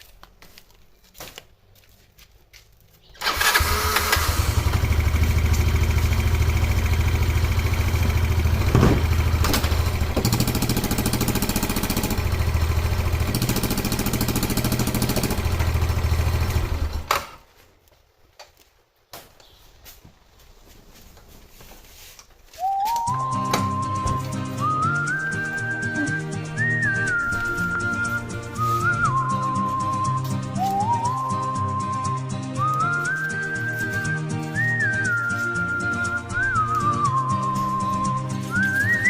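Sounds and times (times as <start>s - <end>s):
abnormal exhaust noise: 0.0s - 39.0s
scooter engine running: 3.2s - 17.4s.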